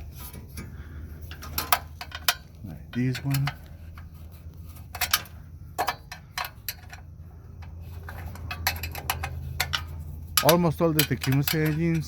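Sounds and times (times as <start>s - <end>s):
steady low hum: 0.0s - 12.0s
hand tool metallic clicks: 10.4s - 12.0s.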